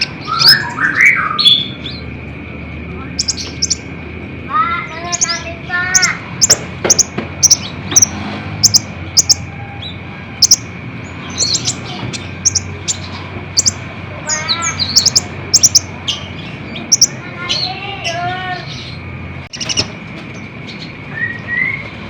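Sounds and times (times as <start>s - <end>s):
bird warbled phrases: 0.0s - 2.1s, 2.8s - 19.8s.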